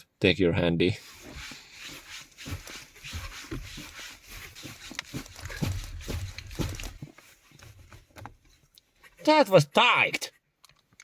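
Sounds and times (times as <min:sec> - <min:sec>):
rubbing and handling noise: 0:00.8 - 0:09.6.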